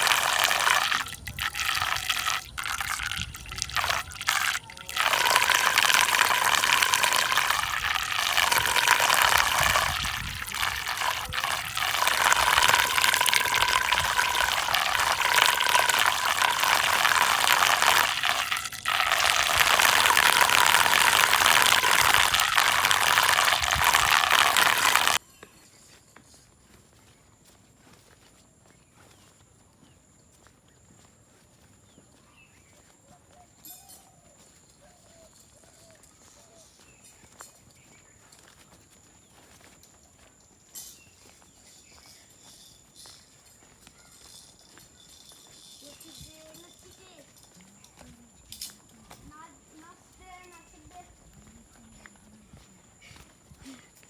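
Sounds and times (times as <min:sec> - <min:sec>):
water rushing in a whirlpool: 0:00.0 - 0:25.2.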